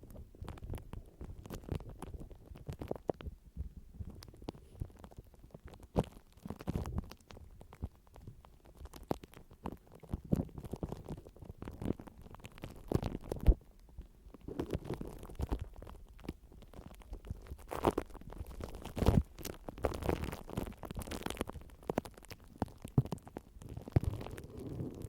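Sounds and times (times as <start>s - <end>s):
close rubbing and scratching: 14.4s - 15.8s, 23.6s - 25.0s.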